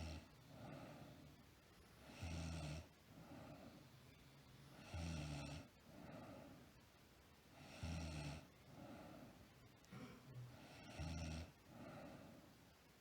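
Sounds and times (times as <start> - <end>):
soft breathing: 0.0 - 2.2, 2.8 - 4.9, 5.6 - 12.9
woman snoring: 4.8 - 5.7, 10.7 - 11.5.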